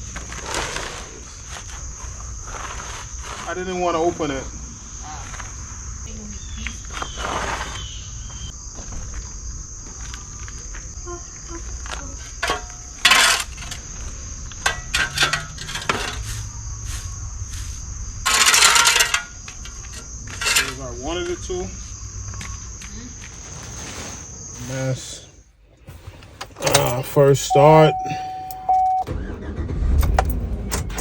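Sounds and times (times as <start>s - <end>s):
high-pitched insect chorus: 0.0s - 25.5s
rattle: 12.3s - 16.5s, 18.2s - 21.5s, 29.1s - 31.0s.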